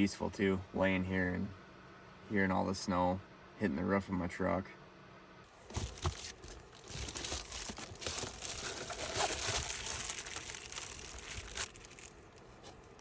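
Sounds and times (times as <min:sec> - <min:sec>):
crinkly sheet rustling: 0:05.6 - 0:13.0.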